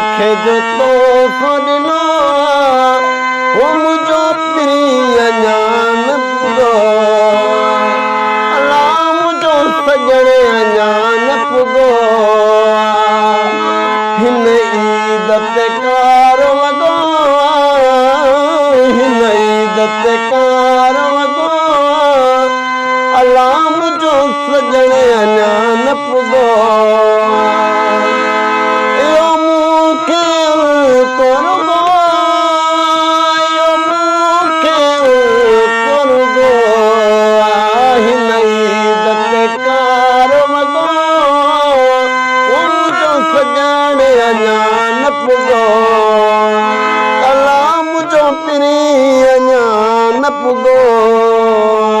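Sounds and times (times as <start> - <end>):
sliding lead melody: 0.0 - 52.0
held drone note: 18.2 - 19.8.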